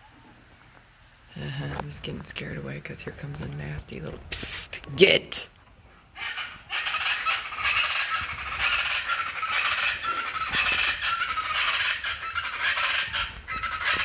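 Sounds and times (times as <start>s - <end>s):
birds calling in chorus: 6.2s - 14.0s.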